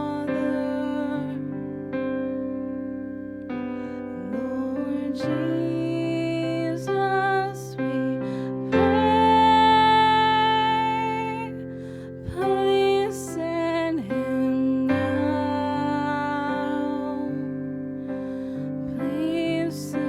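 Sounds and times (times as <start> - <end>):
slow gentle worship music: 0.0 - 20.0.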